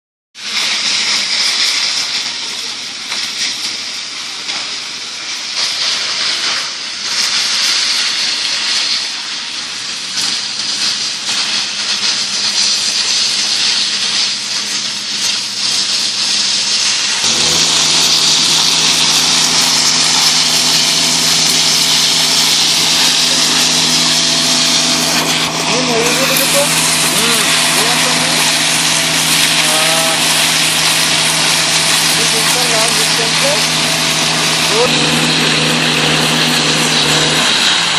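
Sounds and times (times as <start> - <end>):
broad hissing noise: 0.4 - 37.9
construction machinery engines running: 0.4 - 37.9
strong engine hum: 17.2 - 37.9.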